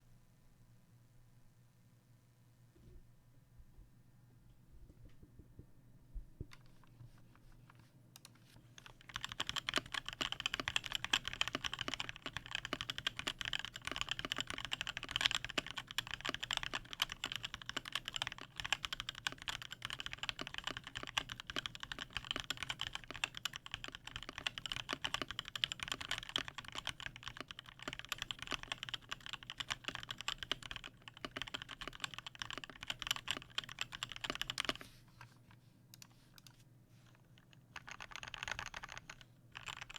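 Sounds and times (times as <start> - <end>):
mechanical keyboard typing: 8.2 - 34.8, 37.4 - 39.9.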